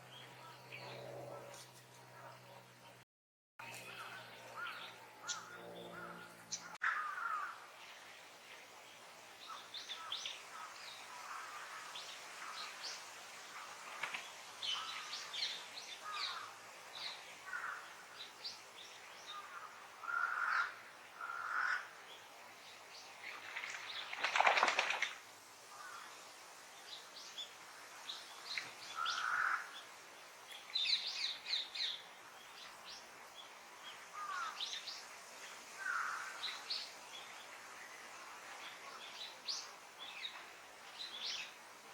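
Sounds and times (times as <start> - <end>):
birds chirping: 3.6 - 25.2.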